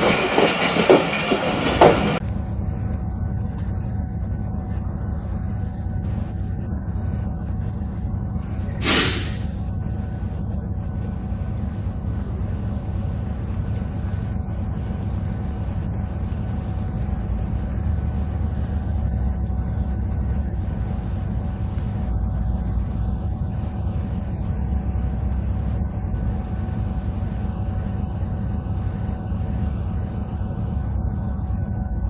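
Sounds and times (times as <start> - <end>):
passenger train rumbling: 0.0 - 2.4.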